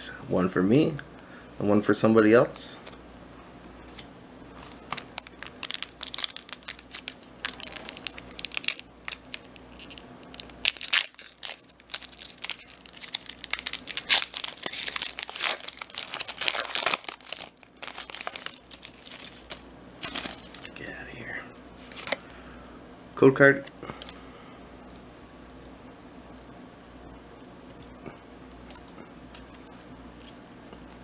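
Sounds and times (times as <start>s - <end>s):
foil wrapper crinkling and tearing: 4.6s - 20.8s.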